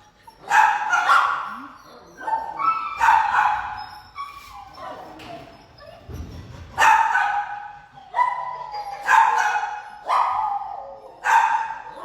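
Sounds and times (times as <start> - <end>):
dog barking loudly: 0.5 - 1.5, 6.8 - 8.4, 9.0 - 12.0.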